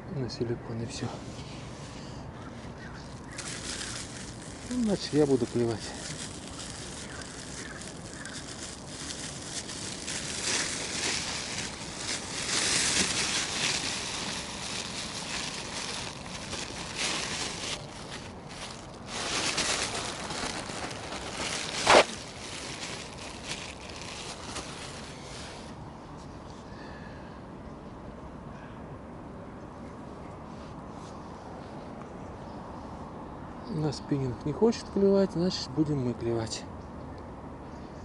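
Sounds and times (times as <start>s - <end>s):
plastic packaging rustling: 3.0s - 25.7s.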